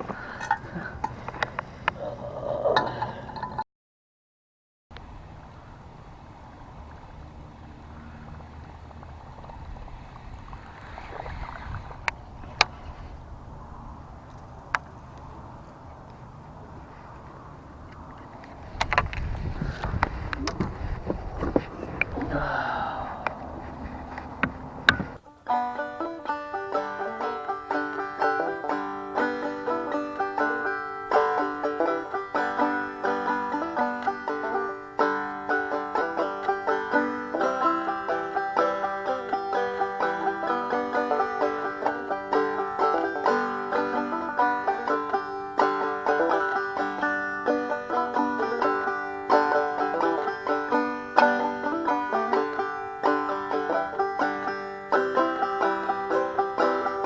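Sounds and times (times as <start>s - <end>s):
fast banjo picking: 23.3s - 57.0s.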